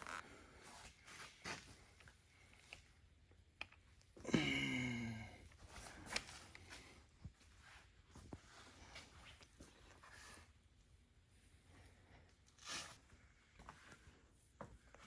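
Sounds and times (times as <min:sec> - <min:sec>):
faint clicks and taps of handling parts: 0:01.2 - 0:04.2, 0:05.5 - 0:10.5
person's short wordless vocal sound: 0:04.2 - 0:05.4.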